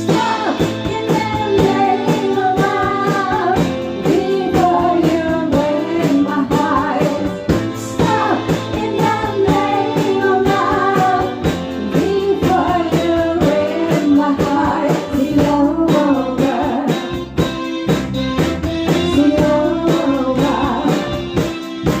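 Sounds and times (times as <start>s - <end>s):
woman singing: 0.0s - 17.2s, 19.0s - 21.3s
live band music: 0.0s - 22.0s.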